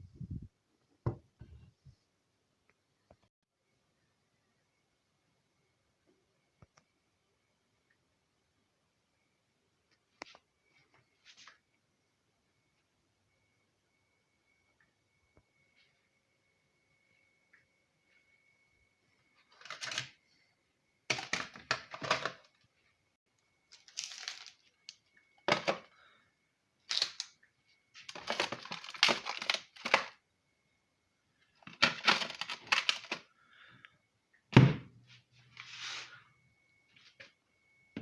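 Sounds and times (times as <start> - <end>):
handling crackling and clattering: 28.0 - 30.2, 31.6 - 33.2.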